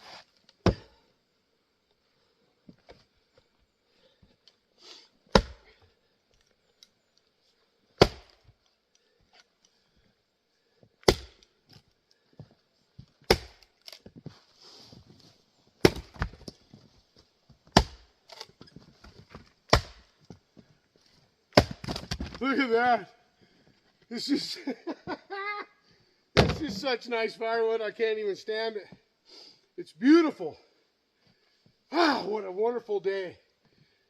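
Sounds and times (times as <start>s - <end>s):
axe chopping wood: 0.6s - 1.0s, 5.3s - 5.8s, 8.0s - 8.4s, 11.0s - 11.5s, 13.2s - 14.0s, 15.8s - 16.5s, 17.7s - 18.5s, 19.7s - 20.1s, 21.5s - 22.4s, 26.4s - 26.7s.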